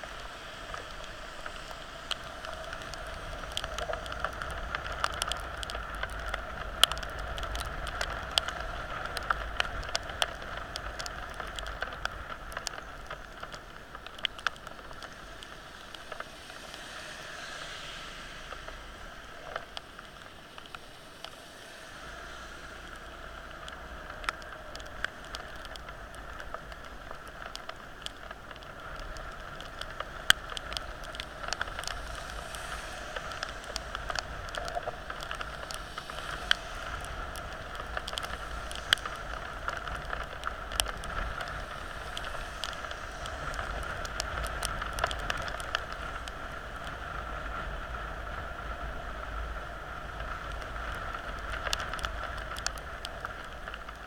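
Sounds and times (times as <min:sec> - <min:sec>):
raindrops ticking on microphone: 0:00.0 - 0:54.0
heavy rain hissing: 0:30.1 - 0:45.0.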